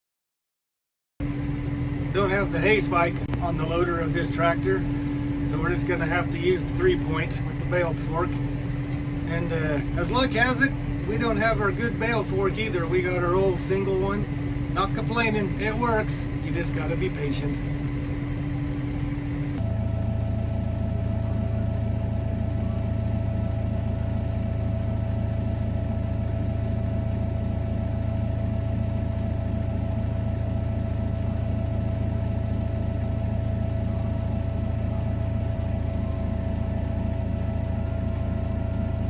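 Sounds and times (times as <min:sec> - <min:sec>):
diesel engine running: 0:01.2 - 0:39.0
steady whine: 0:01.2 - 0:39.0.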